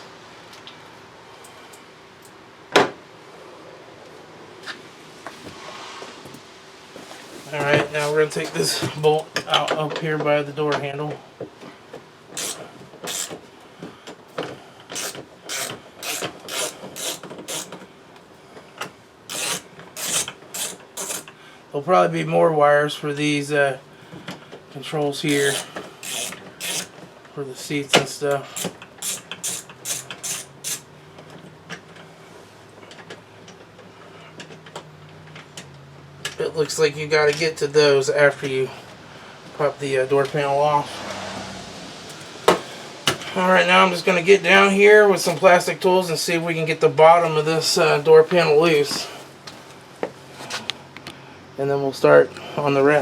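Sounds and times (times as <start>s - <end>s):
hand ratchet clicking: 12.4s - 13.4s, 14.9s - 17.8s, 19.3s - 21.4s, 25.3s - 26.9s, 28.6s - 30.8s.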